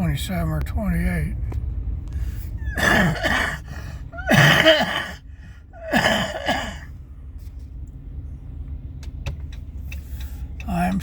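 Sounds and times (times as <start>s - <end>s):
man coughing: 2.7s - 5.2s, 5.8s - 6.9s.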